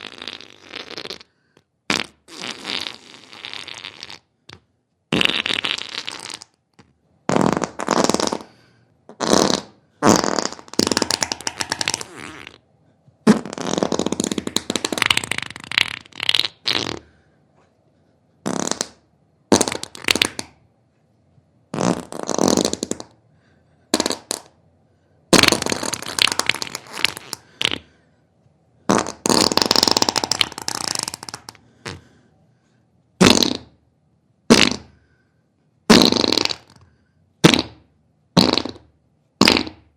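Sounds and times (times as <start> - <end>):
fart sounds with fluttering rattle: 0.0 - 1.3, 1.9 - 8.5, 9.1 - 12.6, 13.2 - 17.1, 18.4 - 20.6, 21.7 - 23.2, 23.9 - 24.6, 25.3 - 27.9, 28.9 - 32.1, 33.2 - 33.8, 34.5 - 35.0, 35.9 - 39.9.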